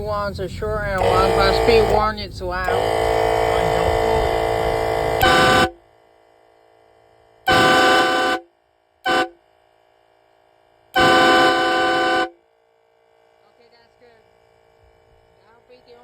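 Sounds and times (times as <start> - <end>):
train horn blasts: 0.9 - 6.0, 7.4 - 9.4, 10.9 - 12.4.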